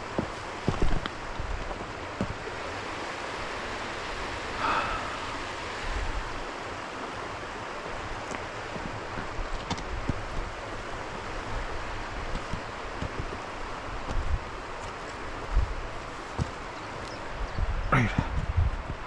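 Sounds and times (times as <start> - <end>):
footsteps on rocks: 0.0 - 2.5, 8.0 - 17.4
stream rushing: 0.0 - 19.0.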